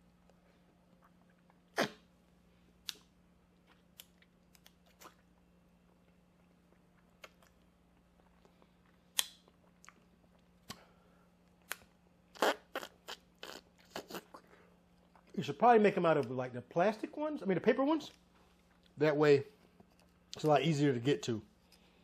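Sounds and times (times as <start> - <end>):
faint steady hum: 0.0 - 22.0
mouth slurps and smacks: 12.4 - 15.4.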